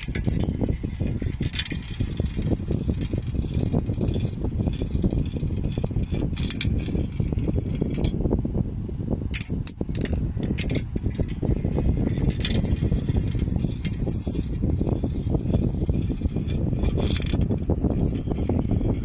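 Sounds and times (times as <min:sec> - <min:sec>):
marbles clacking: 0:00.0 - 0:08.2, 0:09.3 - 0:19.0
marbles rolling on a track: 0:00.0 - 0:08.2, 0:09.3 - 0:19.0.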